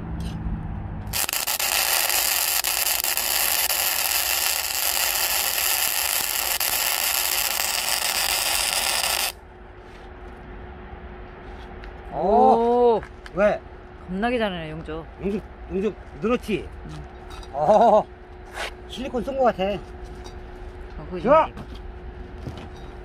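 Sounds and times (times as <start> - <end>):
arc welding hiss: 1.1 - 9.4.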